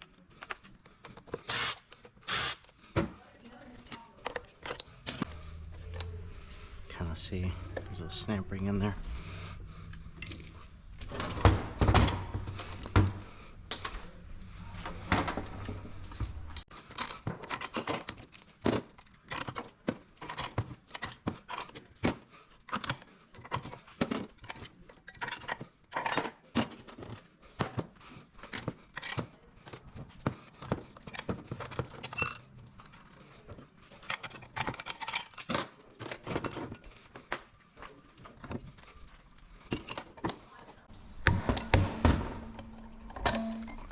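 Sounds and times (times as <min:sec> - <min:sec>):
low steady hum: 0:04.8 - 0:16.6, 0:40.9 - 0:43.9
hand tools clinking on steel: 0:31.9 - 0:37.4, 0:39.6 - 0:40.4, 0:41.2 - 0:43.9.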